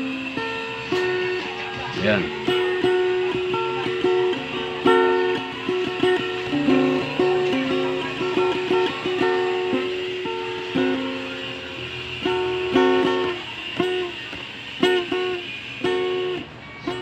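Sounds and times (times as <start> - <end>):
plucked string instrumental music: 0.0 - 17.0.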